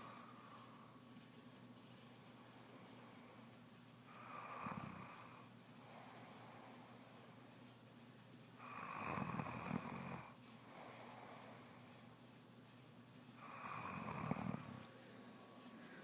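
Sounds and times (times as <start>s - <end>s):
quiet breaths: 0.0s - 16.0s
woman snoring: 4.2s - 5.4s, 8.6s - 10.4s, 13.4s - 14.8s.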